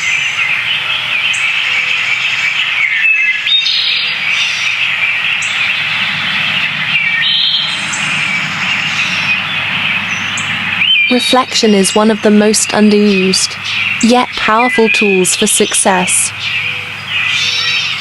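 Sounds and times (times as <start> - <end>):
small birds chirping and twittering: 0.0 - 18.0
sharp high bird calls: 0.7 - 18.0
faint low rumble: 4.0 - 14.1.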